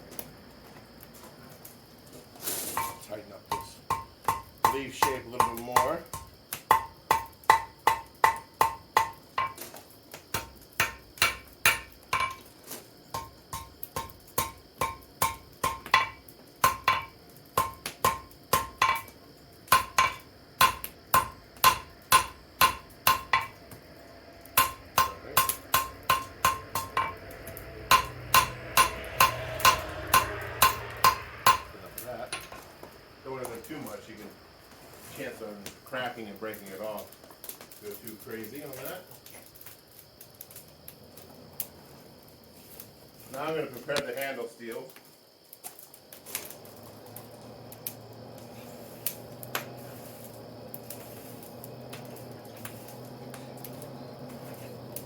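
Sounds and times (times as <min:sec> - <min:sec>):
hammer ringing on anvil: 0:27.9 - 0:31.7.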